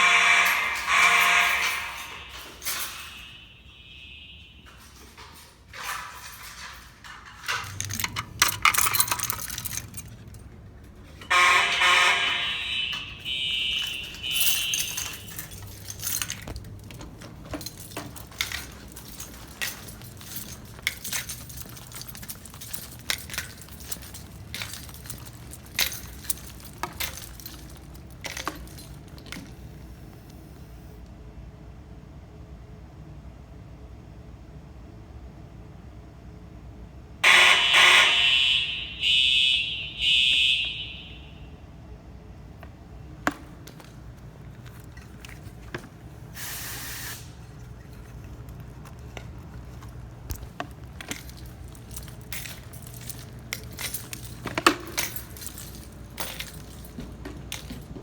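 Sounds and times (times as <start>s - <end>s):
fire alarm horns: 0.0s - 30.0s, 37.2s - 41.8s, 42.6s - 58.0s
metallic clinks: 0.0s - 30.6s, 42.6s - 58.0s.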